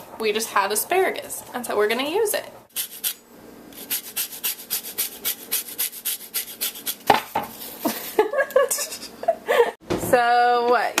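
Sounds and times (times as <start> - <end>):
kitchen sounds: 0.6 - 9.3.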